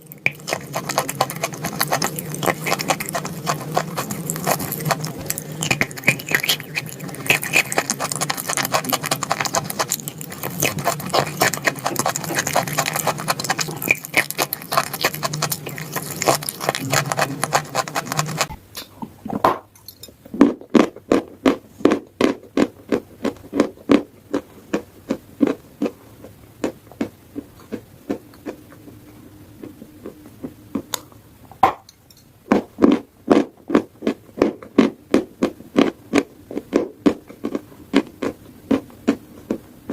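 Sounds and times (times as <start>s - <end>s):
chewing crunchy chalk: 0.0s - 18.6s, 32.5s - 39.9s.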